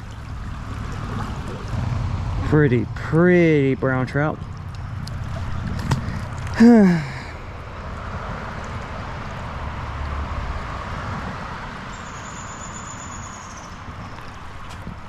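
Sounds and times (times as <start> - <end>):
river water rushing: 0.0 - 3.0, 3.8 - 12.0.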